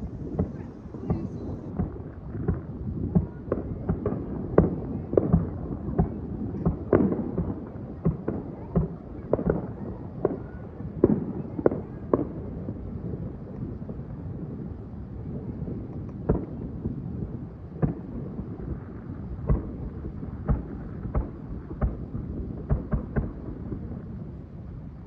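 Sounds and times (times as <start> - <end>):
low rumble: 0.0 - 6.9
fireworks bangs and crackles: 0.0 - 25.0.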